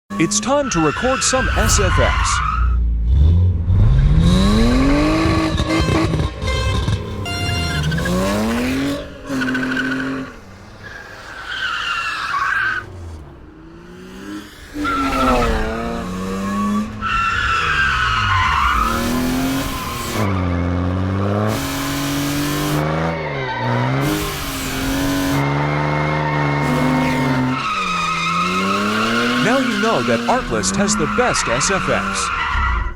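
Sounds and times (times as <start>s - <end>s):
tyres squealing: 0.1s - 2.7s, 23.2s - 32.9s
car engine revving: 0.1s - 32.9s.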